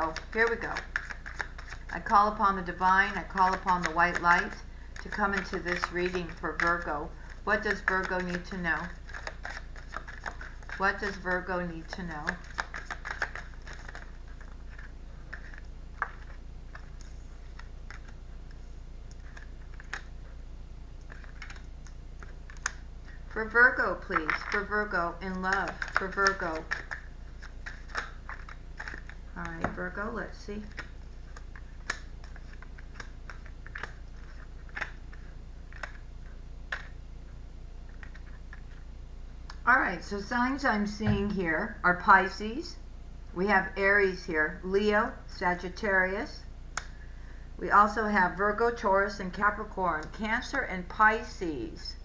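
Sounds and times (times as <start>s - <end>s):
cards being shuffled: 0.0s - 20.1s, 21.0s - 37.0s, 37.9s - 38.8s
steady low hum: 0.0s - 52.0s.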